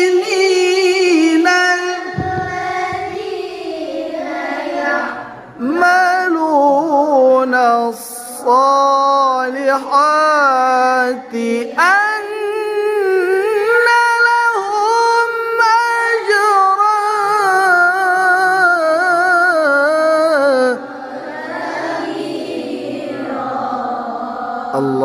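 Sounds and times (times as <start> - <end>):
person reciting melodically: 0.0 - 25.0.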